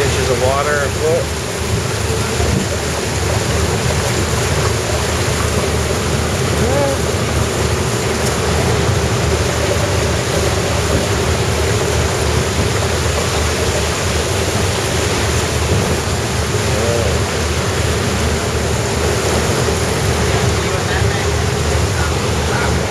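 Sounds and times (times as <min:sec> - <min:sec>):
floodwater rushing and splashing: 0:00.0 - 0:22.9
train rumble: 0:00.0 - 0:22.9.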